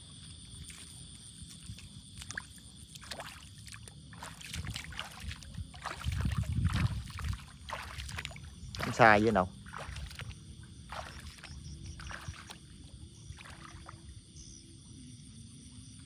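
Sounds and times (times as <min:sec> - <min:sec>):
water sloshing and splashing: 0:00.0 - 0:14.6
insects chirring: 0:00.0 - 0:16.0.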